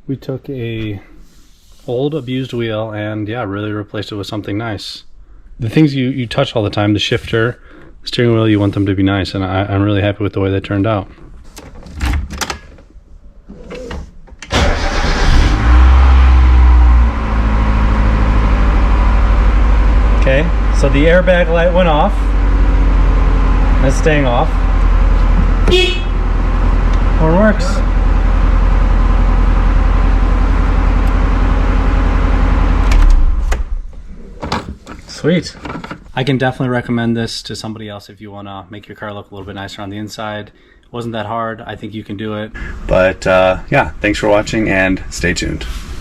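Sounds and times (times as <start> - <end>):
starter cranking engine: 14.4 - 16.6
car engine idling: 14.5 - 34.1.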